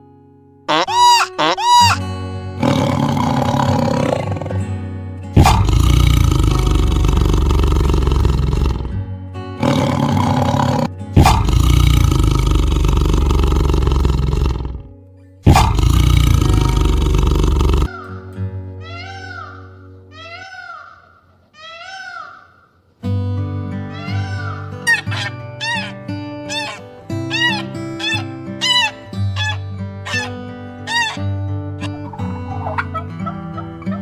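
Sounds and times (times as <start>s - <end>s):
big cat roaring: 2.6s - 4.7s, 5.4s - 9.0s, 9.6s - 14.9s, 15.5s - 18.3s, 23.8s - 34.0s
background music: 23.1s - 34.0s.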